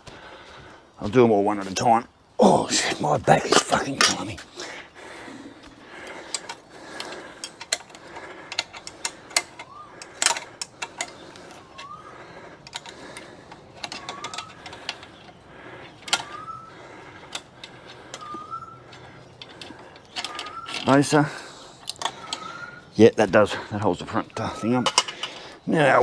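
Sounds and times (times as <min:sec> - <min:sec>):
metal tools clicking and knocking: 0:06.0 - 0:12.0, 0:12.6 - 0:16.4, 0:17.2 - 0:22.5, 0:24.3 - 0:25.6.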